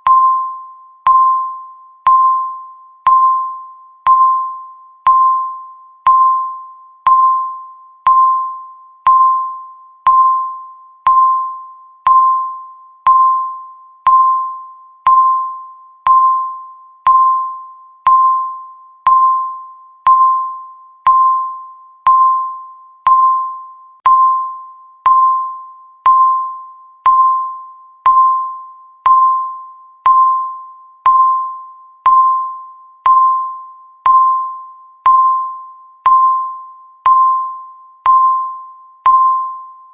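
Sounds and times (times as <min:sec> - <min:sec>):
countdown timer beeping: 0:00.0 - 0:39.9.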